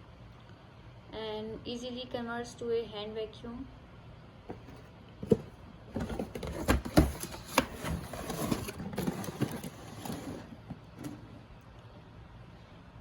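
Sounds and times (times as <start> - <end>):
packaging rustling: 5.2 - 10.6.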